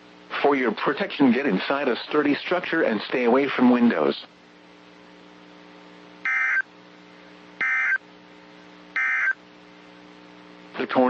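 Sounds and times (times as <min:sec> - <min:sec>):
faint steady hum: 0:00.0 - 0:11.0
digital data tone bursts: 0:06.3 - 0:06.6, 0:07.6 - 0:08.0, 0:09.0 - 0:09.4.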